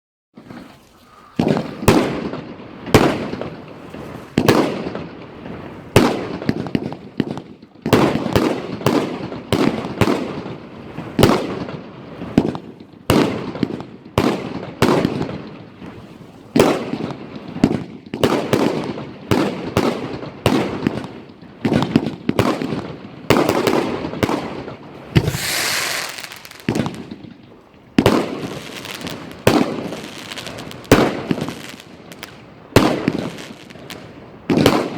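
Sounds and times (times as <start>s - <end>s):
fireworks bangs: 0.4s - 34.9s
fireworks crackling: 0.4s - 34.9s
hissing crackle: 25.0s - 27.7s, 28.3s - 32.5s.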